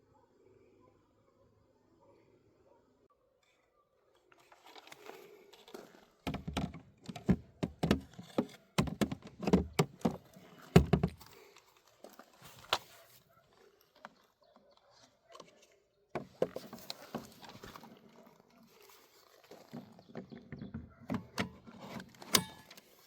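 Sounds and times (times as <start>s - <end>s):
irregular knocks and thuds: 6.3s - 10.2s, 10.8s - 11.2s.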